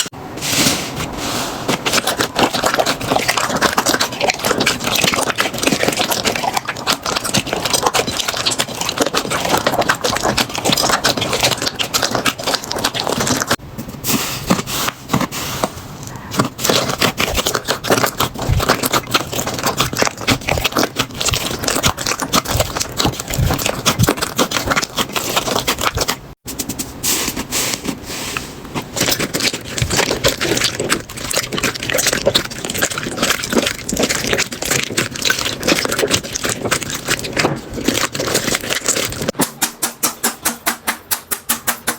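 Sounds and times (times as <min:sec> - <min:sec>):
slime crackling and popping: 0:01.7 - 0:13.6, 0:16.3 - 0:26.4, 0:28.7 - 0:39.4.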